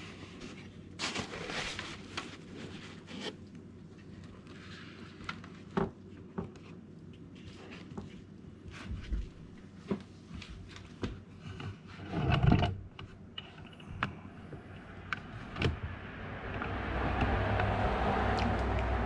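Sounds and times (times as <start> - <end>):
steady low noise: 13.8 - 19.0.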